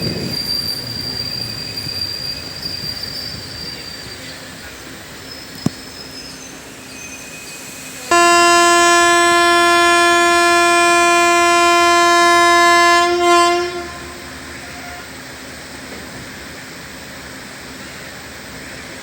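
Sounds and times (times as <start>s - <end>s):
train running noise: 0.0s - 19.0s
locomotive horn blast: 8.1s - 15.2s.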